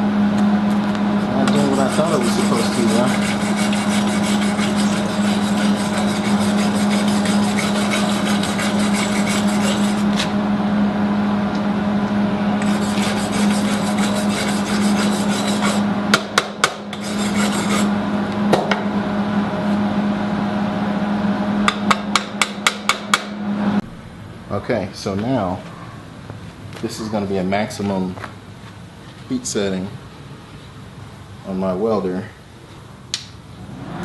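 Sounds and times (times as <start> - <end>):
welder humming: 0.0 - 23.9.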